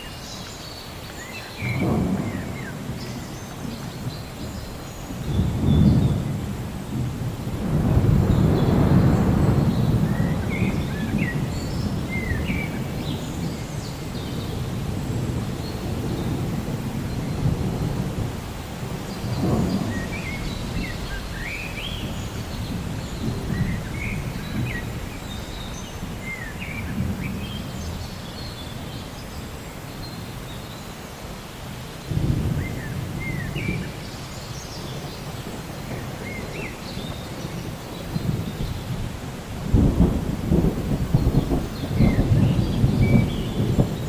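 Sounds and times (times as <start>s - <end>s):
steady rain: 0.0s - 44.0s
rolling thunder: 1.6s - 30.5s, 32.1s - 44.0s
small birds chirping: 40.6s - 44.0s.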